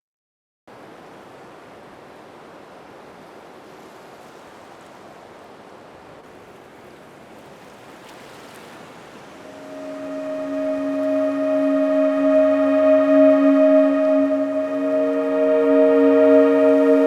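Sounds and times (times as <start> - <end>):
ocean waves washing: 7.3 - 17.0
sustained musical pad: 9.5 - 17.0.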